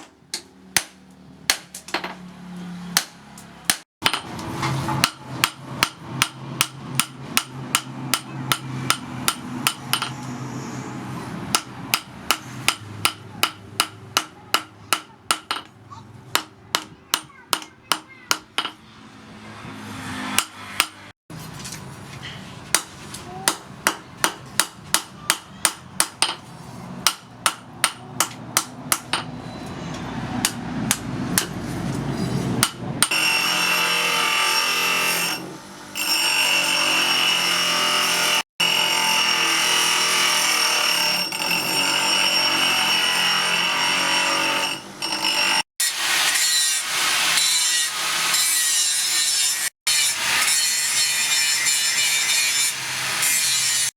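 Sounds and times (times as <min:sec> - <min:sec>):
hammer striking steel on anvil: 0:03.0 - 0:10.3, 0:11.5 - 0:18.8, 0:20.2 - 0:21.1, 0:22.7 - 0:29.6, 0:30.4 - 0:31.6.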